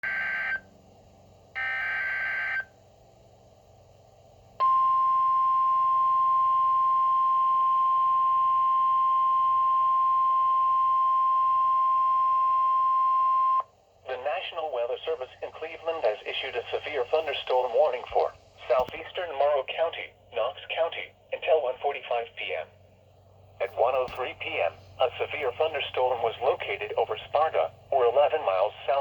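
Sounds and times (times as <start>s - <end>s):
steady warning alarm tone: 0.0s - 0.7s, 1.6s - 2.8s, 4.6s - 13.7s.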